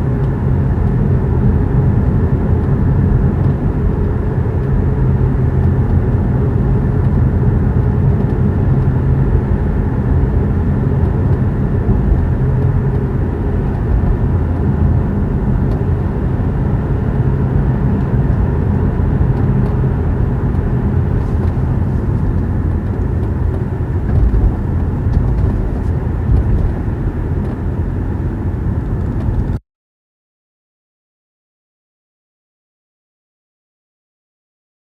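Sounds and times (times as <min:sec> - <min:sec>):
low rumble of road noise: 0:00.0 - 0:29.6.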